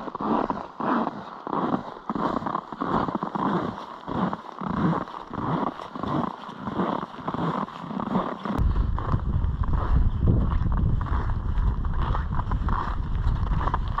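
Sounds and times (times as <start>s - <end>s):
footsteps crunching in snow: 0.0s - 14.0s
wind buffeting microphone: 8.6s - 14.0s.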